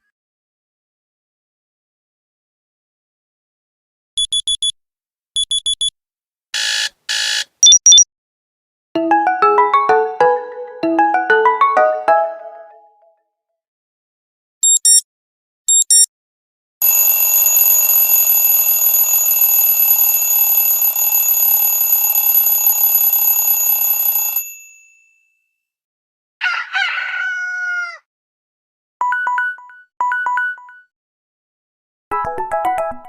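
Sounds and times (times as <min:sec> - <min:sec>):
short high beeps: 0:07.6 - 0:08.1, 0:14.6 - 0:15.0, 0:15.7 - 0:16.1
ringing alarm bell tone: 0:16.8 - 0:25.0
rooster crow sound: 0:26.4 - 0:28.1.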